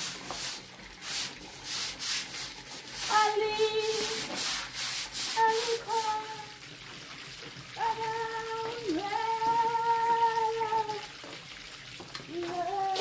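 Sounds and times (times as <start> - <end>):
woman singing long notes: 3.1 - 4.2, 5.4 - 6.6, 7.8 - 11.0, 12.3 - 13.0.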